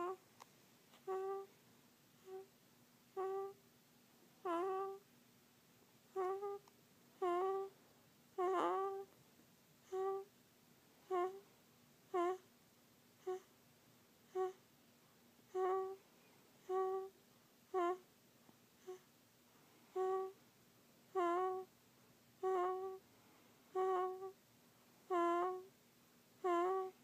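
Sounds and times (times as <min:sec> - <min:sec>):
child snoring squeakily: 0:00.0 - 0:00.2, 0:01.0 - 0:01.5, 0:02.2 - 0:02.5, 0:03.2 - 0:03.6, 0:04.4 - 0:05.0, 0:06.2 - 0:06.6, 0:07.2 - 0:07.7, 0:08.4 - 0:09.1, 0:09.9 - 0:10.3, 0:11.1 - 0:11.4, 0:12.1 - 0:12.4, 0:13.2 - 0:13.5, 0:14.3 - 0:14.6, 0:15.5 - 0:16.0, 0:16.6 - 0:18.0, 0:18.8 - 0:19.1, 0:20.0 - 0:20.4, 0:21.2 - 0:21.7, 0:22.4 - 0:23.0, 0:23.7 - 0:24.4, 0:25.1 - 0:25.7, 0:26.4 - 0:27.0.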